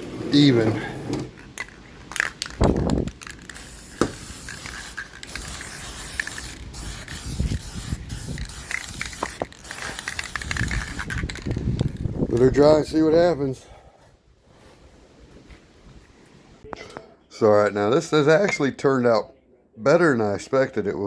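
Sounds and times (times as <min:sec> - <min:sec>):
aerosol spray can hissing: 0:03.4 - 0:11.1.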